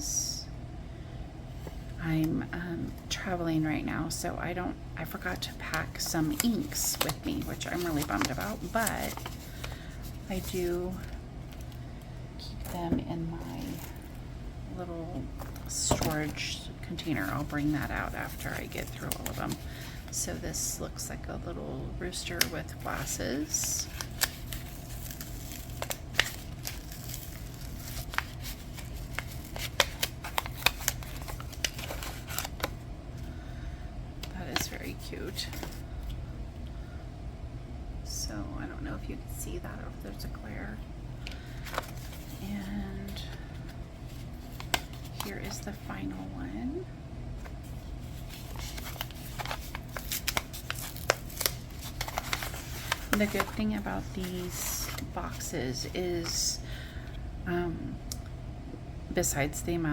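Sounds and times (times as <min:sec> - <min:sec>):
crinkly packaging crackling: 0:05.0 - 0:11.8, 0:15.3 - 0:21.1, 0:22.1 - 0:33.3, 0:34.2 - 0:36.2, 0:41.2 - 0:46.3, 0:47.4 - 0:56.7
plastic packaging clicks and crinkles: 0:22.3 - 0:32.8, 0:48.1 - 0:53.6.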